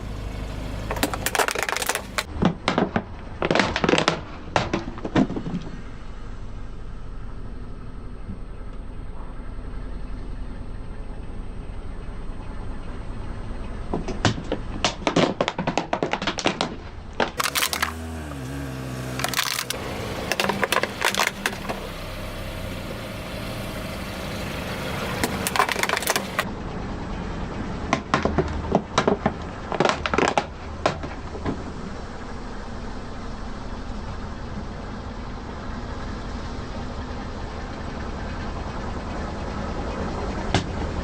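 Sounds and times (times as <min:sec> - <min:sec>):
objects crunching under tyres: 0:00.0 - 0:06.8, 0:13.7 - 0:26.5, 0:27.7 - 0:32.5
car engine idling: 0:00.0 - 0:41.0.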